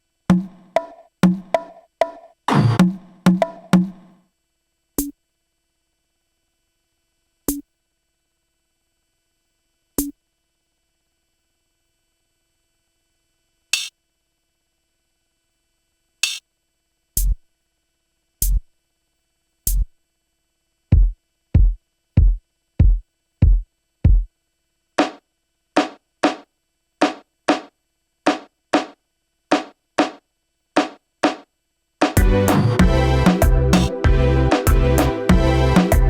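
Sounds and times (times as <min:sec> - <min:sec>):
kick drum hits: 0:00.3 - 0:01.8, 0:20.9 - 0:24.3
snappy drum hits: 0:00.3 - 0:04.1, 0:25.8 - 0:26.4, 0:27.0 - 0:27.7, 0:28.3 - 0:30.2.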